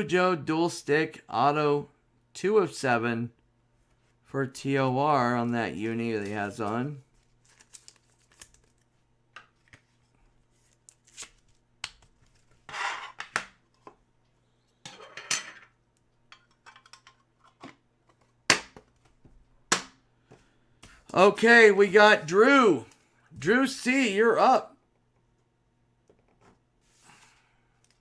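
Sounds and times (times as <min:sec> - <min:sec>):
cards rustling slides: 0:06.0 - 0:08.8, 0:10.5 - 0:11.6.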